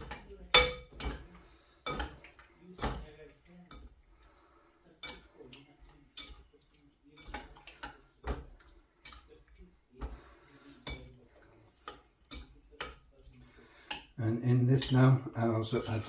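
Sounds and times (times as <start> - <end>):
spoon clinking against bowl: 0.0 - 3.1.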